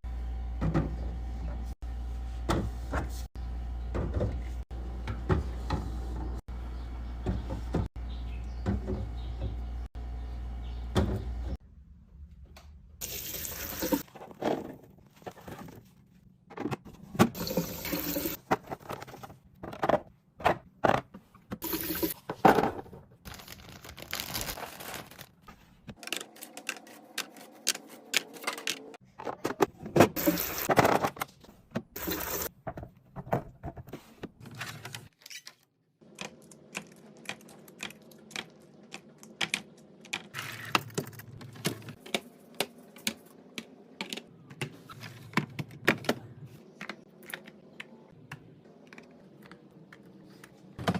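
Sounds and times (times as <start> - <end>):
packaging rustling: 23.3 - 27.0.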